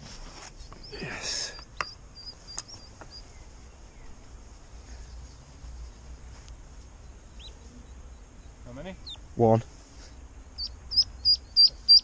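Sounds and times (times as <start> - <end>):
outdoor background rumble: 0.0 - 12.0
ducklings peeping: 0.7 - 6.1, 7.0 - 9.3, 10.4 - 12.0.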